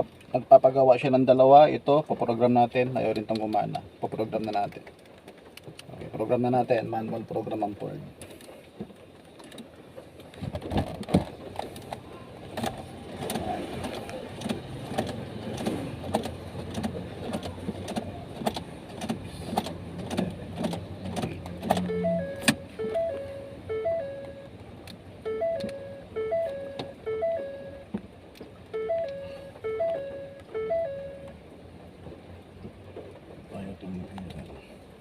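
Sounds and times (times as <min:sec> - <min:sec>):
low steady hum: 0:05.5 - 0:35.0
ignition key clicks: 0:12.6 - 0:27.8, 0:28.8 - 0:31.3
repeating electronic tones: 0:21.7 - 0:24.6, 0:25.2 - 0:27.9, 0:28.7 - 0:31.3.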